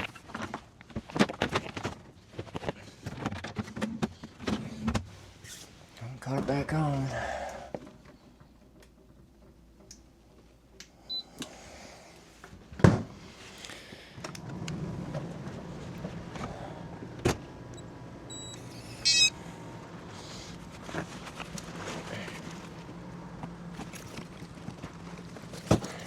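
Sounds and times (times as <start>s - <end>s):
refrigerator low hum: 0.1s - 26.0s
high electronic beeps: 18.3s - 19.3s
short electronic beep: 18.3s - 19.3s.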